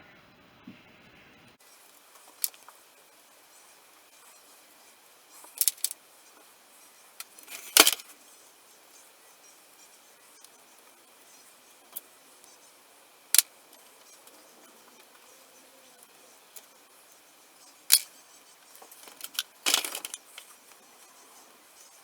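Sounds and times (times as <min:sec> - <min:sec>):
metal rattling clatter: 0:07.2 - 0:08.1, 0:17.9 - 0:20.6
metal tools clinking: 0:07.2 - 0:08.1, 0:17.9 - 0:18.1, 0:18.8 - 0:20.6.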